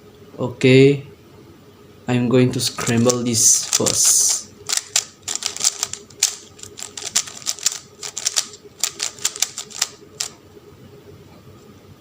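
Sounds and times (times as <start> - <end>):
plastic puzzle cube clicking: 2.8 - 10.3.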